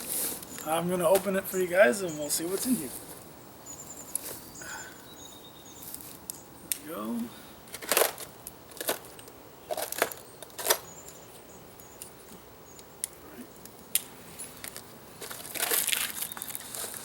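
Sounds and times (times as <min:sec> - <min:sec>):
packing material rustling: 0:14.5 - 0:17.0.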